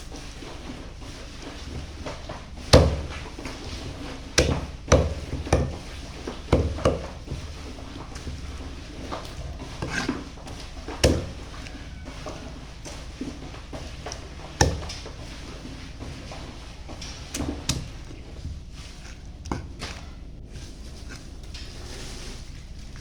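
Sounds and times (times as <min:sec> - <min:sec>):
cleaver chopping on wooden block: 0:02.7 - 0:03.2, 0:04.4 - 0:05.9, 0:06.5 - 0:07.2, 0:11.0 - 0:11.4.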